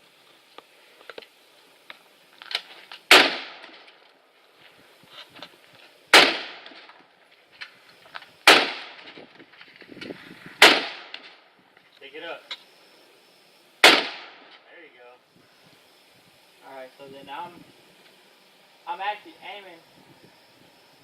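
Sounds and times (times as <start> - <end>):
loud gunshots with echo: 10.6 - 11.1, 13.8 - 14.4.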